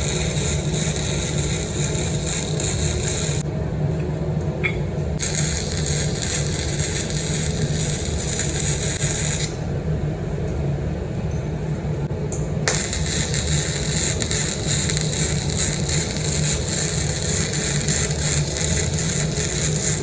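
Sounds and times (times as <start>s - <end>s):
welding arc crackling and hissing: 0.0s - 3.4s, 5.2s - 9.6s, 12.7s - 20.0s.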